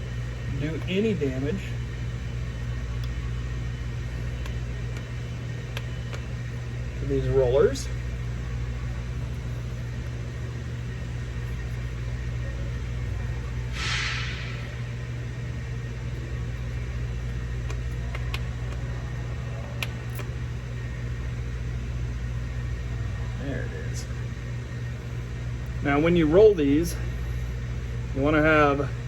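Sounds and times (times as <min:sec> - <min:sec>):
low machine hum: 0:00.0 - 0:29.0
short hiss: 0:13.7 - 0:14.8.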